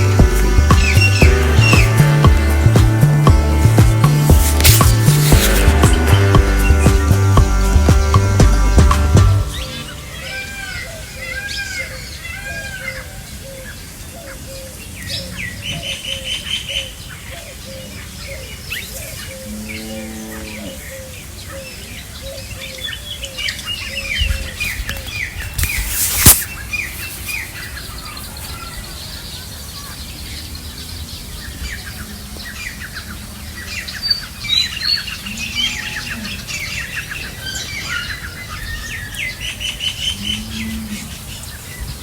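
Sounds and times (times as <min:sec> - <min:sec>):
small birds chirping: 0:00.0 - 0:07.2, 0:09.4 - 0:42.0
sharp knock: 0:04.3 - 0:07.1.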